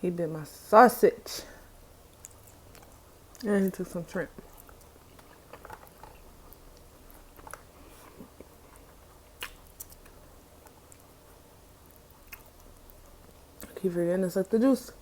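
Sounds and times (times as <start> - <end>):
mouth clicks and smacks: 2.1 - 3.5, 4.4 - 11.2, 11.8 - 13.8
wet chewing: 2.1 - 13.8.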